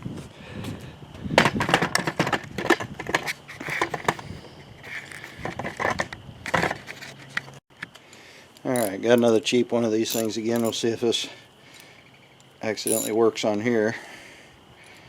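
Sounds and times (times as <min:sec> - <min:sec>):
metal tools clattering: 0:08.7 - 0:09.3, 0:10.0 - 0:10.8, 0:12.8 - 0:13.2.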